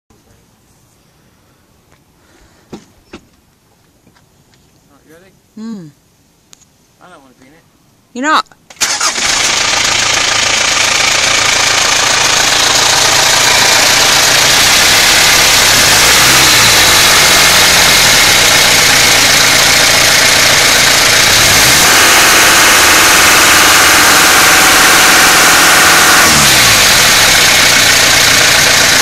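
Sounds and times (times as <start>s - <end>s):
strange engine noise: 8.7s - 29.0s
diesel engine running: 8.8s - 29.0s.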